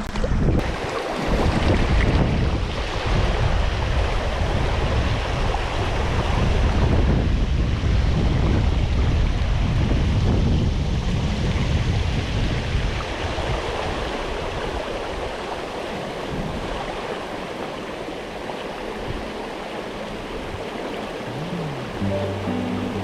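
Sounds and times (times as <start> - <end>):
wind buffeting microphone: 0.1 - 13.6.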